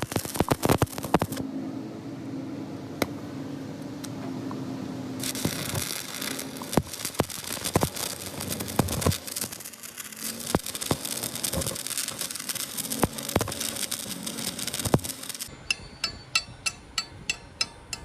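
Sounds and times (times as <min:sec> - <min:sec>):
electric arc welding crackling hiss: 0:00.0 - 0:01.4, 0:05.2 - 0:15.5
sharp welding pops: 0:00.0 - 0:01.4, 0:05.2 - 0:15.5.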